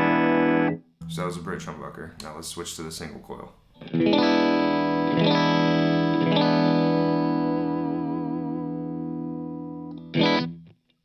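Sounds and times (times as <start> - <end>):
clean electric guitar chords: 0.0 - 1.2, 3.8 - 10.7.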